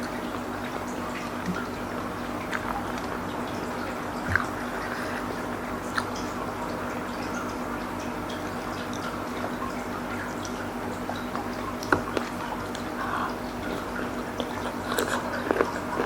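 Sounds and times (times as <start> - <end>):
steady low hum: 0.0 - 16.0
wet chewing: 2.4 - 3.1, 5.9 - 6.2, 11.4 - 16.0
sharp mouth clicks: 5.9 - 6.1.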